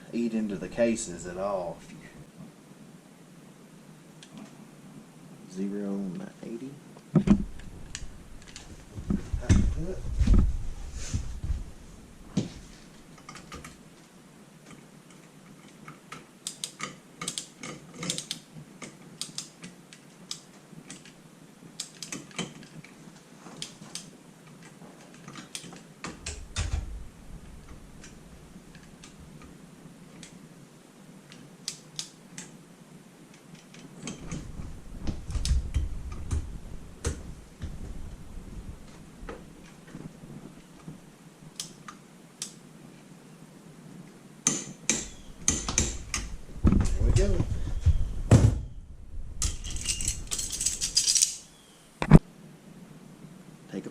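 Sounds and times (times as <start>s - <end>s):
dull thumps: 7.1s - 7.8s, 8.8s - 12.7s, 44.9s - 48.9s
metallic clicks of hand tools: 15.1s - 21.2s.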